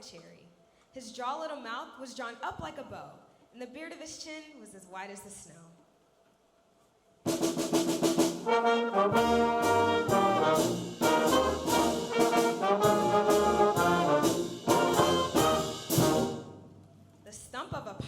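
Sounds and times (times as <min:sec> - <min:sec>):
school brass band playing: 0:07.4 - 0:16.8.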